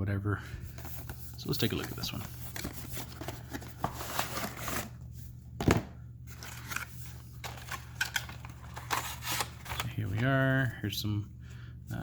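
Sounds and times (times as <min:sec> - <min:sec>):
cardboard scraping and rustling: 0:00.8 - 0:05.0, 0:06.3 - 0:10.4.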